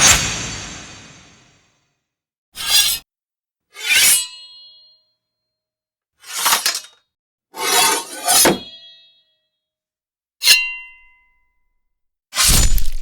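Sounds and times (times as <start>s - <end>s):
sword blades clashing: 12.4s - 13.0s.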